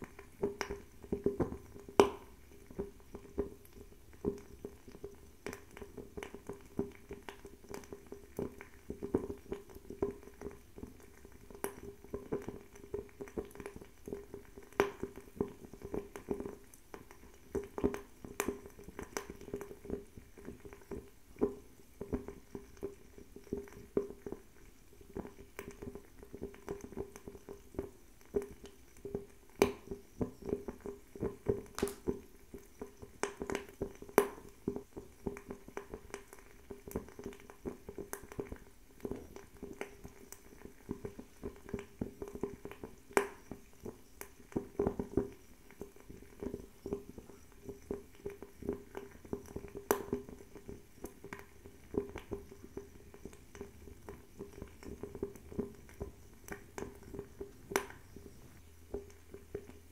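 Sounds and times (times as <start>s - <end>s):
fire crackling and popping: 0.0s - 59.9s
low hum of flame: 0.0s - 59.9s.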